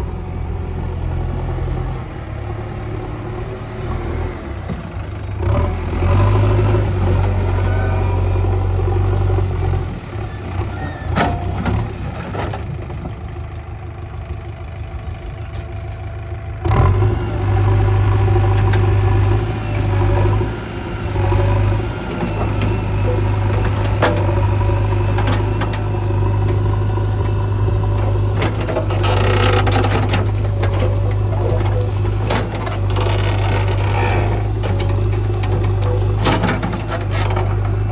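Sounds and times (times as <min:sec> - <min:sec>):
diesel engine under load: 0:00.0 - 0:37.9.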